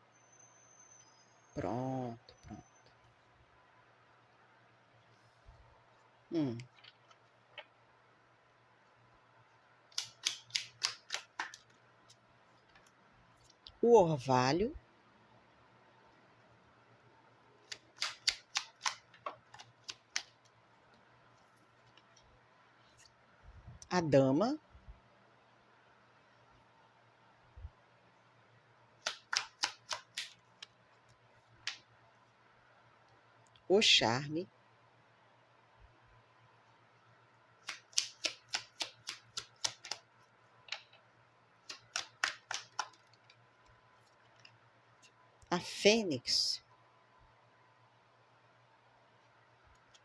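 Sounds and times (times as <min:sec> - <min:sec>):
cards snapping and tapping: 0:09.9 - 0:11.8, 0:17.6 - 0:20.5, 0:29.0 - 0:30.7, 0:37.6 - 0:40.0, 0:41.6 - 0:43.4.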